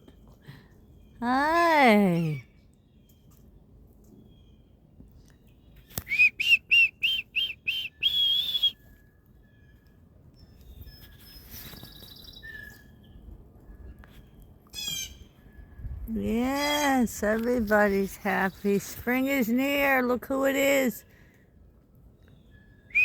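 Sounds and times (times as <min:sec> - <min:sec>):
songbird whistled notes: 0:05.9 - 0:09.0, 0:10.8 - 0:13.0, 0:22.4 - 0:23.0.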